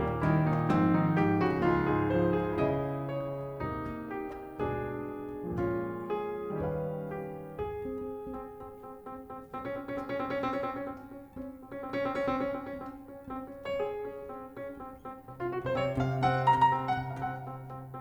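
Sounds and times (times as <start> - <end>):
jazz piano playing: 0.0 - 18.0.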